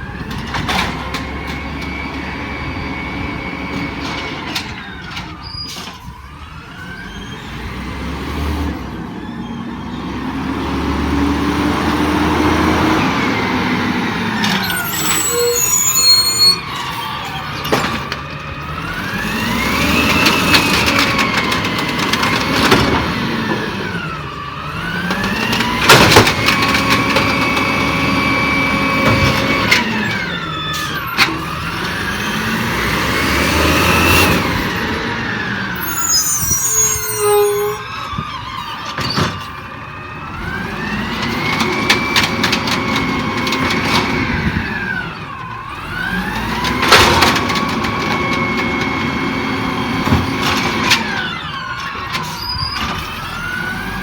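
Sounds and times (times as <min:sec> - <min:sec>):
diesel engine revving: 0:09.8 - 0:38.2
hiss and squeal: 0:14.5 - 0:17.5, 0:35.7 - 0:38.1, 0:52.3 - 0:53.0.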